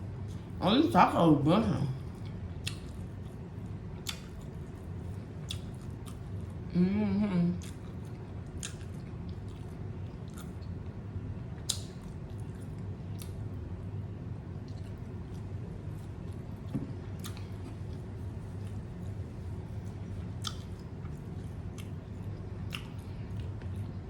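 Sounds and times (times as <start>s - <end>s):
person chewing: 2.1s - 6.6s, 7.6s - 11.0s, 11.6s - 13.4s, 14.7s - 24.0s
person humming: 6.7s - 7.6s.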